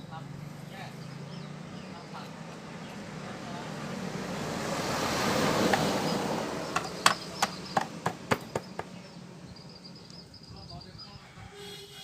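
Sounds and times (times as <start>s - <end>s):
passing traffic: 0.0s - 12.0s
sharp knocks: 6.7s - 9.0s.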